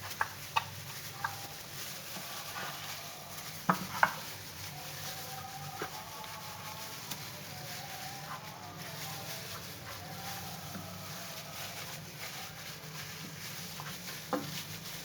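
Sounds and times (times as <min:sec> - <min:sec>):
hands rubbing wet meat: 0:00.0 - 0:15.0.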